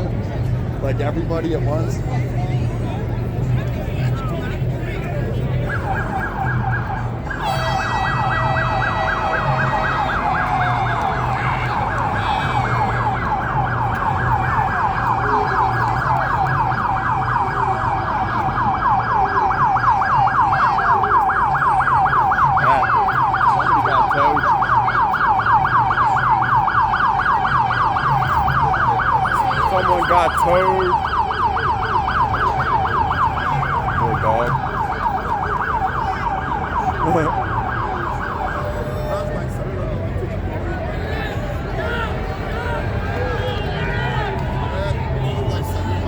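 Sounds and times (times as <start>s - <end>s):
siren yelping: 5.3s - 39.9s.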